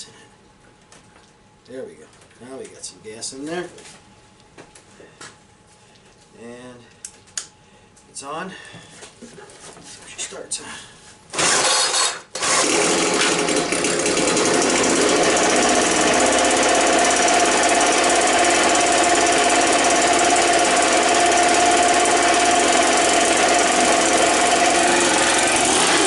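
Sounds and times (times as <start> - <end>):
leaf blower engine whine: 11.4 - 26.0.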